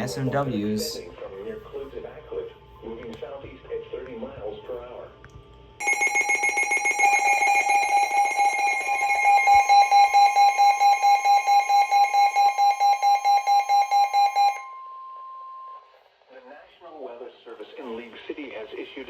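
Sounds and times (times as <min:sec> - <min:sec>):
radio alert alarm beeping: 0:05.8 - 0:14.8
steady warning tone: 0:05.8 - 0:15.9.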